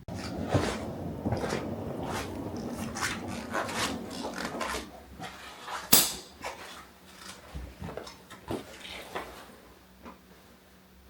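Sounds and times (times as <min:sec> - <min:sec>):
sharp click: 0:05.9 - 0:06.3.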